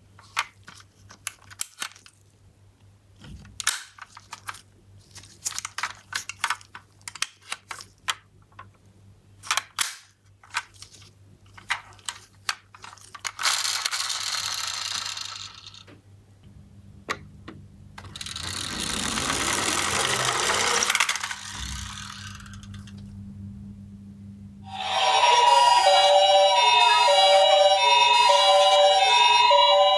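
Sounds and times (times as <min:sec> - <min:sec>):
toy cars clicking and clattering: 0:03.6 - 0:08.7, 0:09.4 - 0:15.9, 0:18.0 - 0:23.0
toy car wheels rolling: 0:12.8 - 0:15.9, 0:18.0 - 0:22.9.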